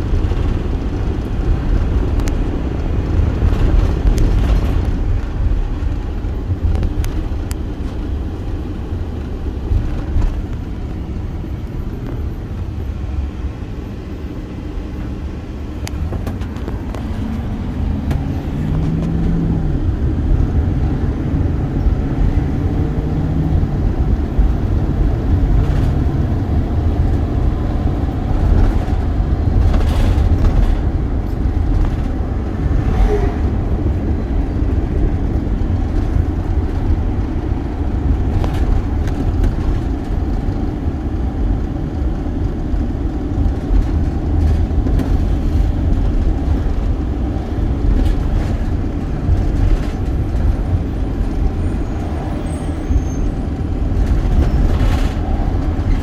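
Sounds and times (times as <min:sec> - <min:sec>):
vehicle road and engine rumble: 0:00.0 - 0:56.0.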